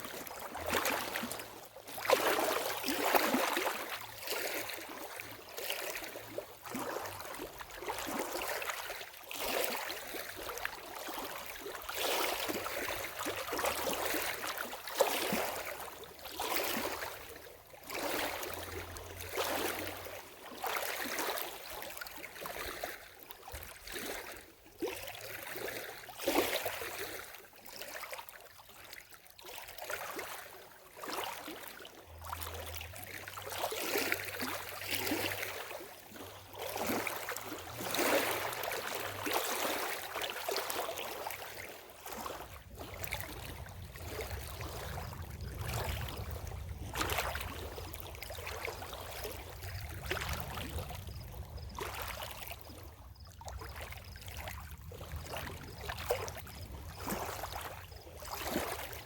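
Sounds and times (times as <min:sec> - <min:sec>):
lake water lapping at shore: 0:00.0 - 0:59.0.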